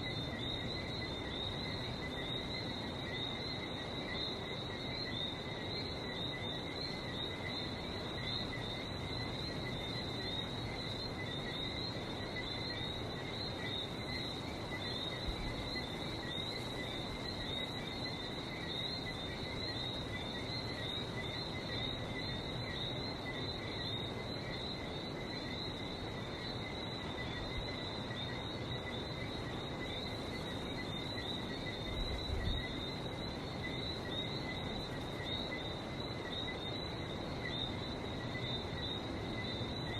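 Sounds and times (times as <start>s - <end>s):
whistling frogs chirping: 0.0s - 39.9s.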